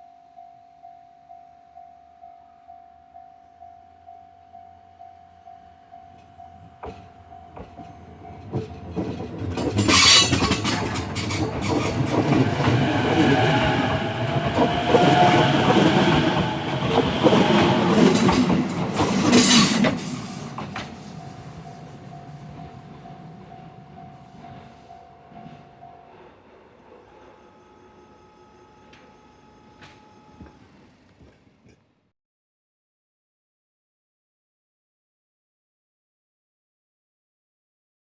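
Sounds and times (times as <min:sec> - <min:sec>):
level-crossing bell ringing: 0:00.0 - 0:08.9, 0:09.8 - 0:26.2
train rumbling and wheels clattering: 0:04.4 - 0:32.0
wheel flange squeals: 0:07.8 - 0:21.8, 0:26.9 - 0:31.5.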